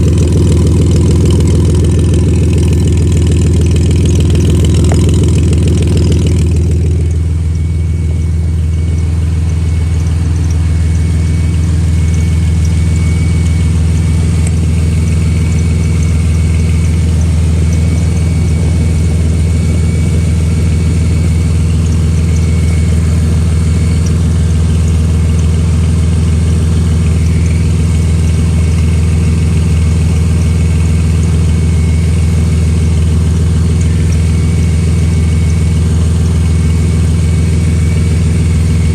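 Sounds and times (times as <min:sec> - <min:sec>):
engine idling with exhaust leak: 0:00.0 - 0:38.9.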